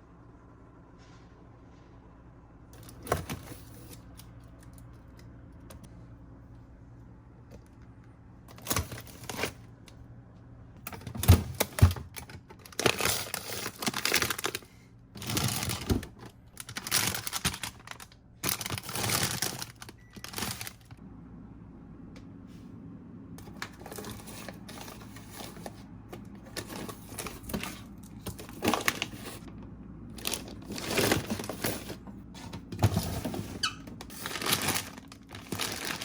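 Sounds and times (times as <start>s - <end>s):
low steady hum: 0.0s - 36.0s
rustling crinkling packaging: 8.5s - 9.6s, 11.0s - 21.0s, 23.4s - 36.0s.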